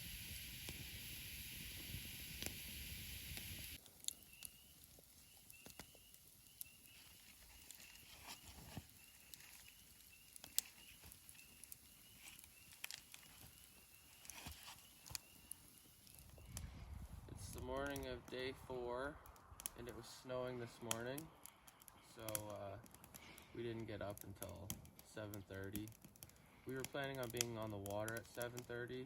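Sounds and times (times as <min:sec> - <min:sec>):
steady hiss: 0:00.0 - 0:29.0
light clicks: 0:20.9 - 0:23.4.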